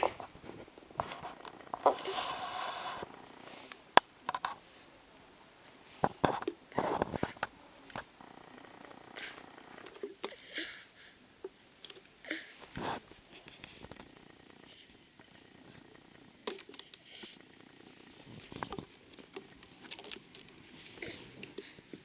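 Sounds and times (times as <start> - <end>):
baby snoring: 0.0 - 3.8, 8.2 - 11.0, 20.9 - 21.9.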